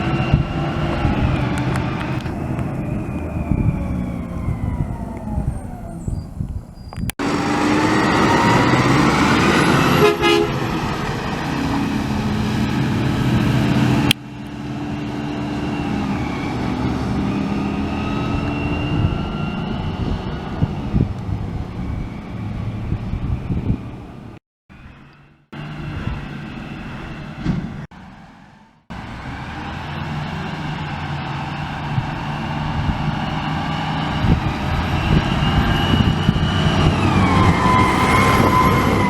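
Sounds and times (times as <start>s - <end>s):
garbage truck diesel engine: 0.0s - 6.2s, 7.2s - 39.0s
high-pitched brake squeals: 33.5s - 39.0s.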